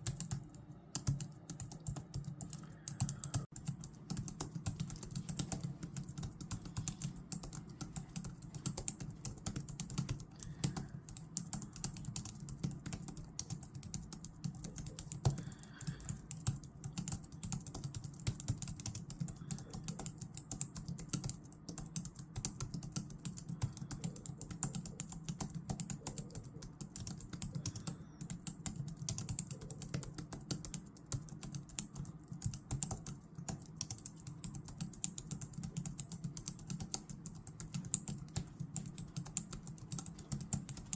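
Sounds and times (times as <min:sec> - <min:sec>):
computer keyboard typing: 0:00.0 - 0:40.9.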